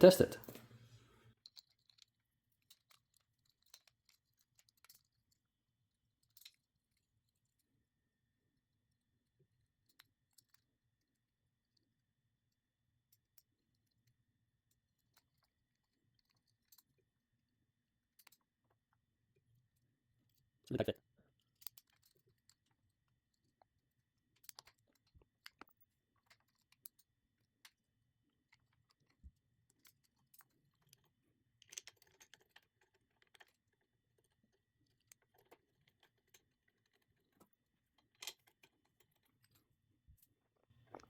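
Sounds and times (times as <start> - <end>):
clicks and taps of small tools: 24.4 - 27.1, 34.9 - 41.0.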